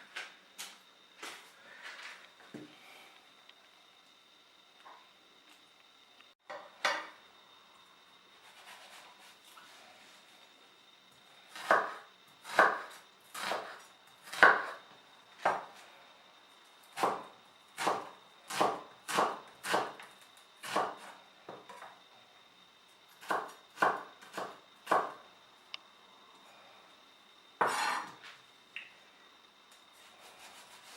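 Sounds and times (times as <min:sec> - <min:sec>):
knife chopping on cutting board: 0:11.5 - 0:14.8, 0:27.6 - 0:28.1.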